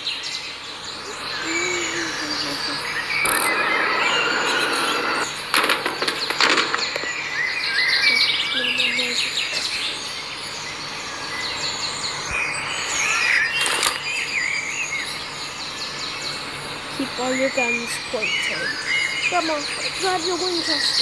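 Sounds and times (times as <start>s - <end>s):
birds chirping and trilling: 0.0s - 21.0s
short sharp noises: 13.6s - 14.1s.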